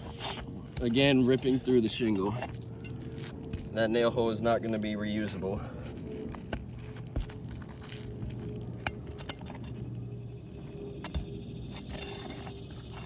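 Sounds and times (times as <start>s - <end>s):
steady low hum: 0.0s - 13.0s
tools and shingles clicking: 5.9s - 10.0s.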